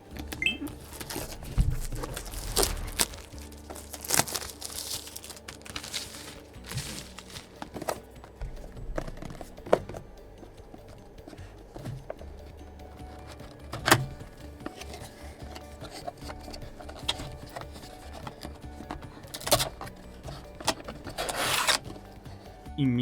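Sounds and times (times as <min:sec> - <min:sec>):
plastic wrap crinkling and tearing: 0:00.1 - 0:08.0, 0:15.8 - 0:21.9.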